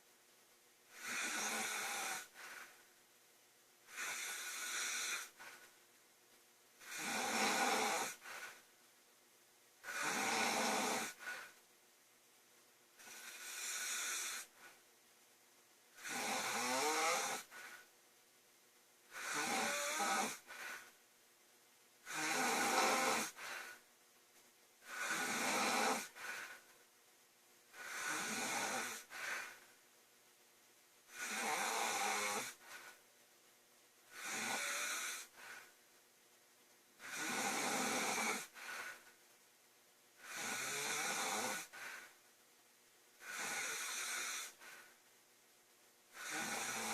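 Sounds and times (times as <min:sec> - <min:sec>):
woman snoring loudly: 0:00.9 - 0:02.6, 0:03.9 - 0:05.5, 0:06.8 - 0:08.6, 0:09.8 - 0:11.5, 0:13.0 - 0:14.5, 0:16.0 - 0:17.8, 0:19.1 - 0:20.8, 0:22.0 - 0:23.8, 0:24.8 - 0:26.6, 0:27.7 - 0:29.6, 0:31.1 - 0:32.9, 0:34.1 - 0:35.6, 0:37.0 - 0:38.9, 0:40.2 - 0:41.8, 0:43.2 - 0:44.6, 0:46.1 - 0:46.9.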